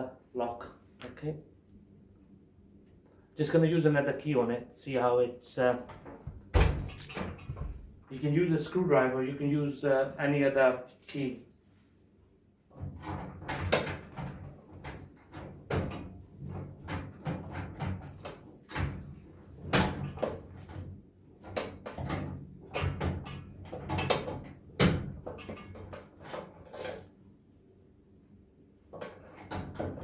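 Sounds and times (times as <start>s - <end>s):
key jiggling in metal lock: 6.8s - 7.5s.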